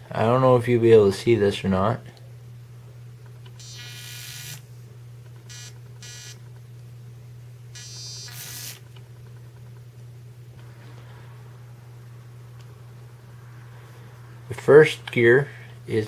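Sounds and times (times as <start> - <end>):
steady low hum: 0.0 - 16.0
small electric motor buzzing: 3.6 - 4.6, 5.4 - 6.4, 7.7 - 8.9.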